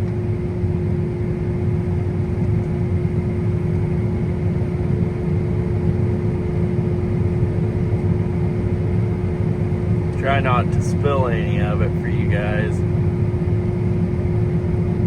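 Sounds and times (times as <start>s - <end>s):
heavy vehicle engine rumbling: 8.7s - 13.1s.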